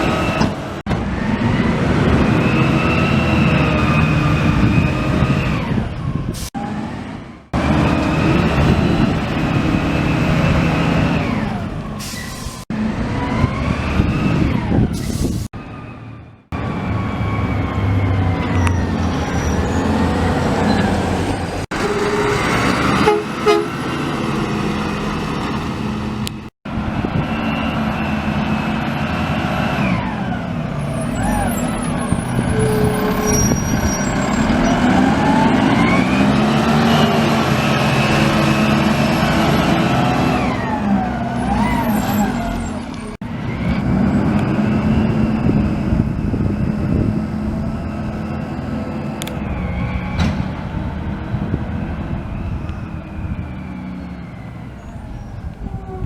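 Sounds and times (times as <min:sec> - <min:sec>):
garbage truck engine: 0:00.0 - 0:56.0
high squeal gliding in pitch: 0:16.8 - 0:21.1, 0:30.8 - 0:38.4.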